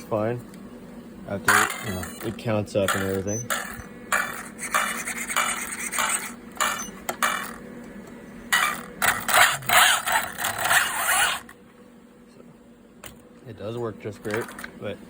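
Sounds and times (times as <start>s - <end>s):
scraping and rustling handling noise: 13.8s - 15.0s.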